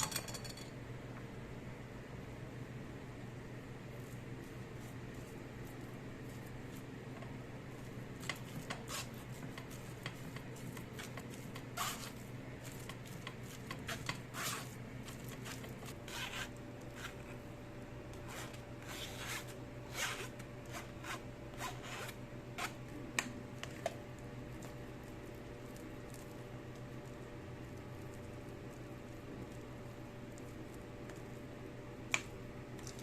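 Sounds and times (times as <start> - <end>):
low steady hum: 0.0 - 33.0
scraping and rubbing strokes: 8.3 - 17.4, 18.2 - 22.8.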